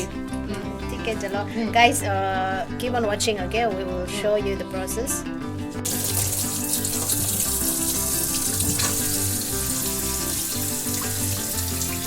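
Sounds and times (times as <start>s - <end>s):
tap water running into sink: 5.8s - 12.0s.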